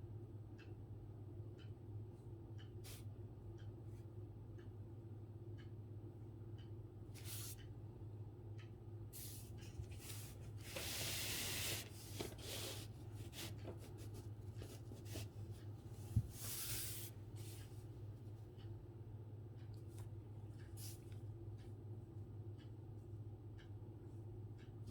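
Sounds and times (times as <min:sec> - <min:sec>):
steady low hum: 0:00.0 - 0:24.9
brush strokes swishing on paper: 0:09.2 - 0:15.4, 0:16.0 - 0:17.7.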